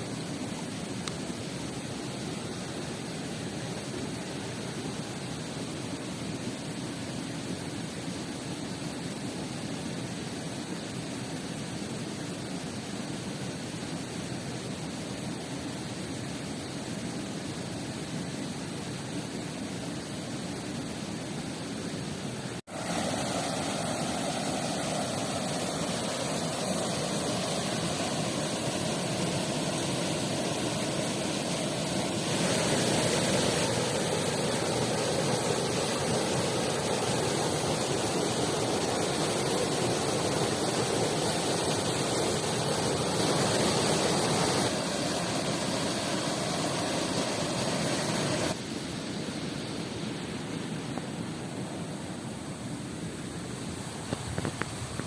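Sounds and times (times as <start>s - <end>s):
river and waterfall rushing: 18.9s - 55.0s.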